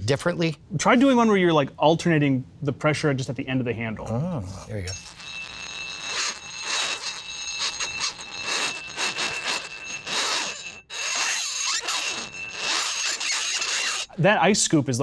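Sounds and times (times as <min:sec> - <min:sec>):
metal squealing on dry ice: 0:04.6 - 0:14.2.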